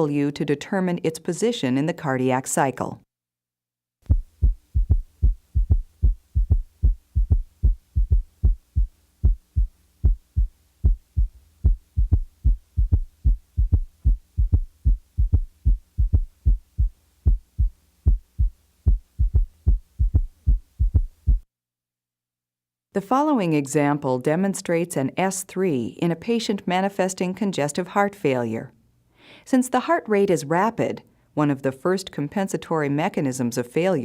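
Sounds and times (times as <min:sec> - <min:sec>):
faint low hum: 0:04.1 - 0:21.4
heartbeat thuds: 0:04.1 - 0:21.5.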